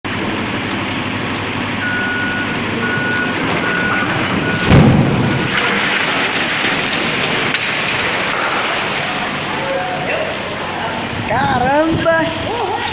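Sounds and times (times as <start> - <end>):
machine rumble: 0.1 - 12.9
vehicle reversing alarm beeps: 1.8 - 5.6
heavy crash: 2.7 - 10.1.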